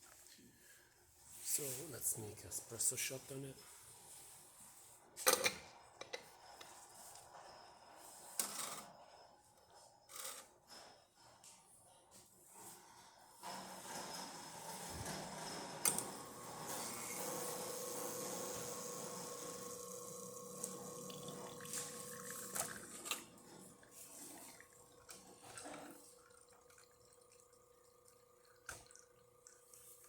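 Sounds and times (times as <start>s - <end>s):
espresso streaming into cup: 13.4s - 30.0s
pump hum: 15.8s - 29.6s.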